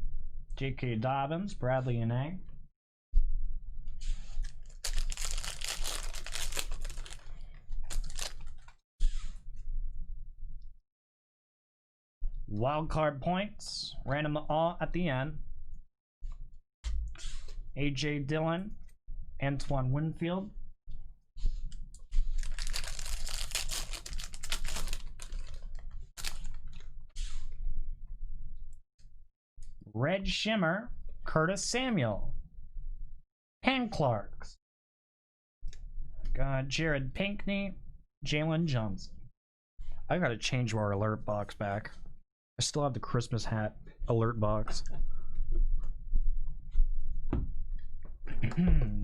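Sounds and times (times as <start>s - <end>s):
cards rustling and clicking: 4.3s - 8.7s, 22.2s - 26.9s
wrappers tearing and crinkling: 4.4s - 8.7s, 22.3s - 26.9s.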